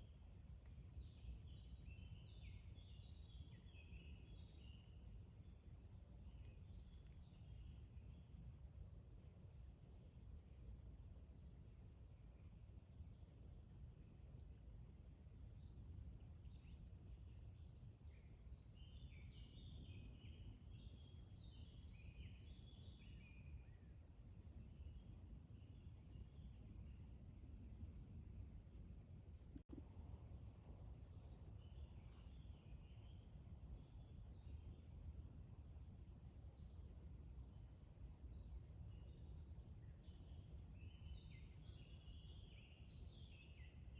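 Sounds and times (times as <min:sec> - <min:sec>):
songbird chirping: 0:00.0 - 0:08.6, 0:15.6 - 0:27.4, 0:29.4 - 0:43.9.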